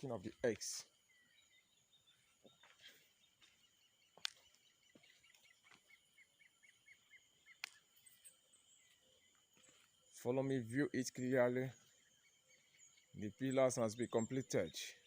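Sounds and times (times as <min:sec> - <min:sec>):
bird chirping: 0:00.0 - 0:15.0
faint outdoor ambience: 0:00.0 - 0:15.0.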